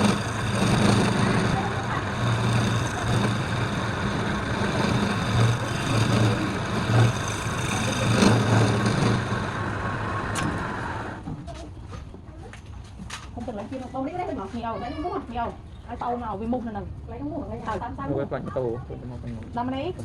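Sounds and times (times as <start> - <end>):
machine motor humming: 0.0 - 11.2.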